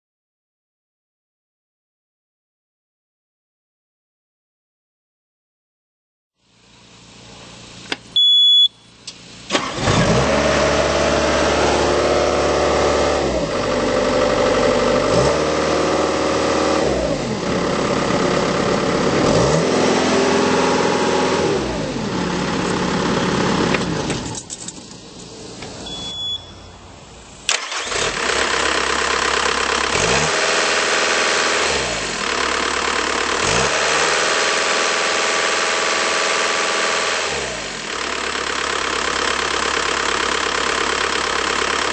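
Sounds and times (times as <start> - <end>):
warning beep: 8.2 - 8.9, 25.8 - 26.9
diesel engine revving: 9.3 - 24.4, 27.2 - 41.9.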